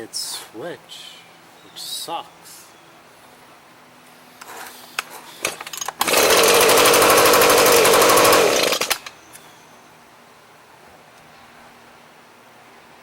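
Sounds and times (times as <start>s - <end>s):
clicks and rattles: 5.4s - 6.2s
two-stroke engine running: 5.5s - 9.1s.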